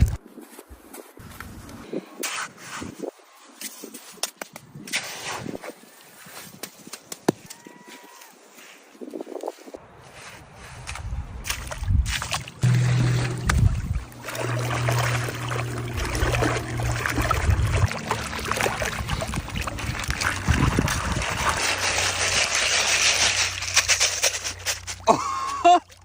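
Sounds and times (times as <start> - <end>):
water trickling and splashing: 10.9 - 26.0
steady low hum: 12.6 - 25.0.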